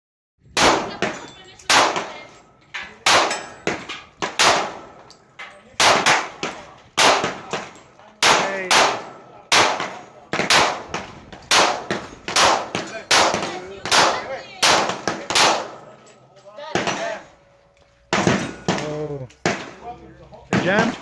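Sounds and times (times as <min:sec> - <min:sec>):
gunshots with ringing tails: 0:00.6 - 0:02.4, 0:03.0 - 0:05.1, 0:05.8 - 0:17.1.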